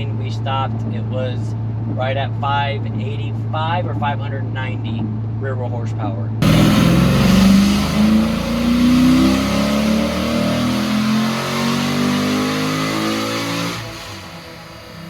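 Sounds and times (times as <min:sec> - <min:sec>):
car engine accelerating: 0:06.4 - 0:15.0.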